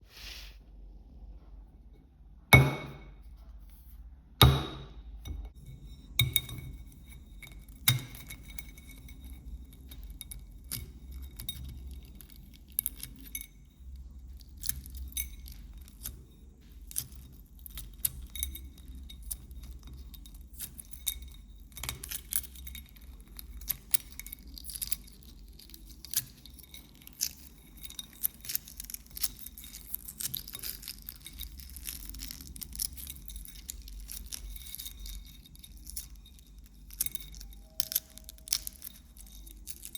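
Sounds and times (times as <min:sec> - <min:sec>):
egg knocking on ceramic plate: 0:02.6 - 0:03.1.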